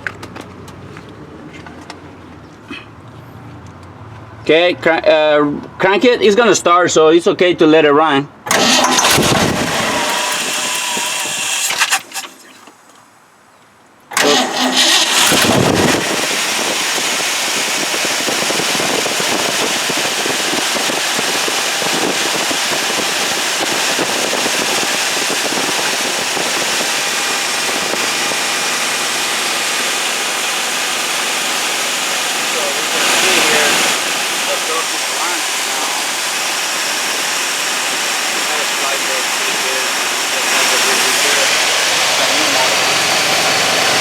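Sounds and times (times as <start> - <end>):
engine running: 8.4 - 12.9, 14.1 - 44.0
engine cranking: 8.5 - 12.9, 14.1 - 44.0.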